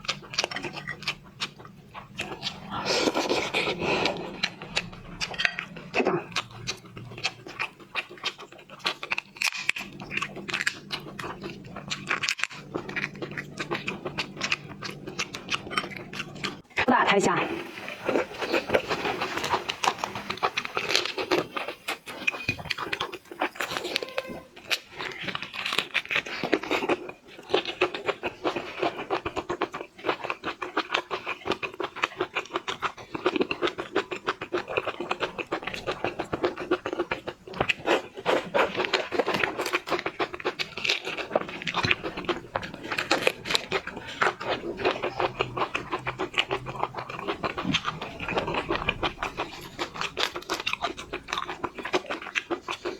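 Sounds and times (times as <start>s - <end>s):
chewing: 0.0s - 52.9s
prawn shell crackling: 17.4s - 26.9s.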